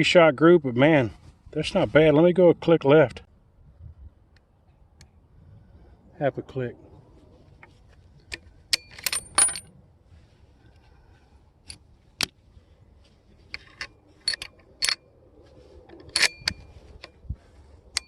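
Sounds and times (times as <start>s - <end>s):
metallic clicks and clinks: 8.7s - 9.7s.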